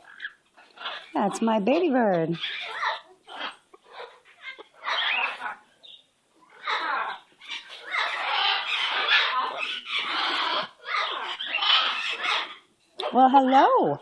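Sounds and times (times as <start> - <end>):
parrot squawking harshly: 2.4 - 5.6, 6.5 - 12.7.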